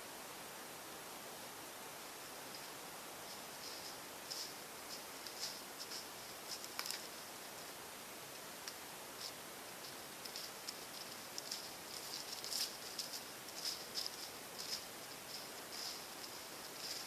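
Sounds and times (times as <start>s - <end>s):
steady hiss: 0.0s - 17.0s
faint rustling with crackling ticks: 2.2s - 7.8s, 8.6s - 17.0s.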